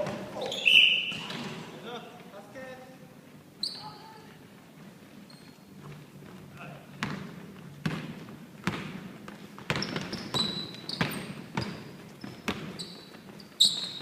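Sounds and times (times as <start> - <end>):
sneakers squeaking on court: 0.0 - 1.8, 3.6 - 4.1, 5.2 - 6.0, 7.0 - 14.0
basketball dribbling on hardwood floor: 7.0 - 13.2.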